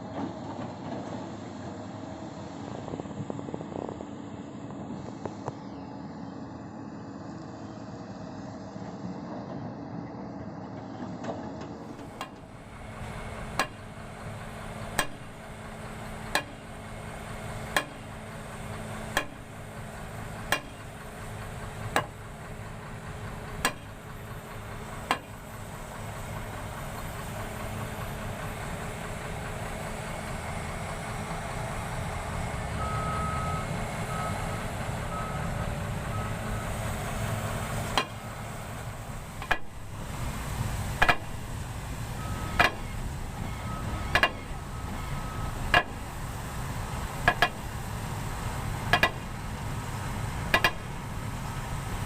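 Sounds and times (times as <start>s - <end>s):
excavator diesel engine running: 0.0s - 52.0s.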